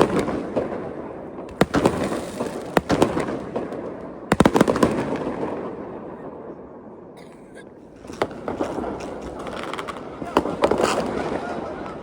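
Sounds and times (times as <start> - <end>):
fireworks bangs: 0.0 - 7.0, 7.8 - 12.0
fireworks crackling and rumbling: 0.0 - 12.0.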